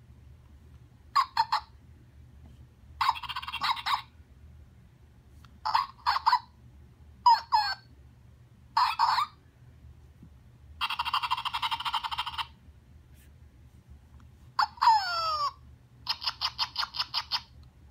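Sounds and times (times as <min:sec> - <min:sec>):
toy dog electronic yips: 0:01.2 - 0:01.7, 0:03.0 - 0:04.1, 0:05.6 - 0:06.6, 0:07.3 - 0:07.9, 0:08.8 - 0:09.4, 0:10.8 - 0:12.6, 0:14.6 - 0:17.6.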